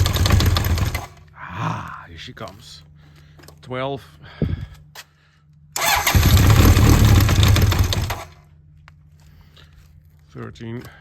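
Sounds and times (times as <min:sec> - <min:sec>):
motorcycle engine cranking: 0:00.0 - 0:01.2, 0:05.8 - 0:08.4.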